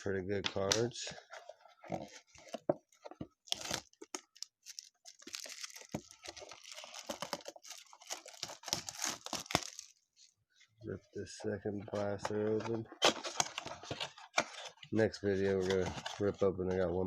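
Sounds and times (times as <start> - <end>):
packaging being torn and crinkled: 3.5 - 10.0.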